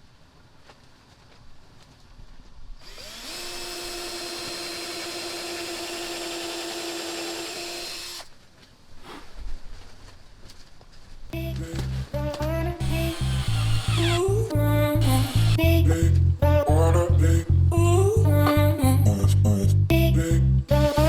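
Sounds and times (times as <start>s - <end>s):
power drill whining: 2.8s - 8.3s, 12.8s - 15.6s.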